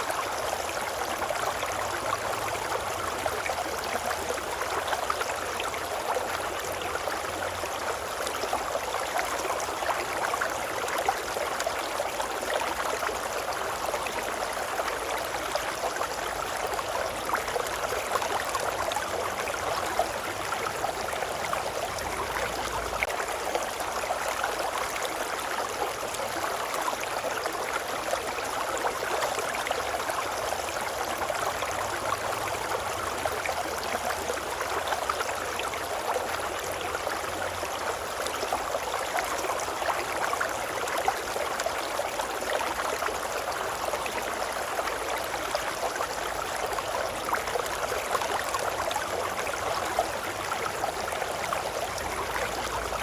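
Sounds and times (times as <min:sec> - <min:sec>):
river water babbling: 0:00.0 - 0:53.0.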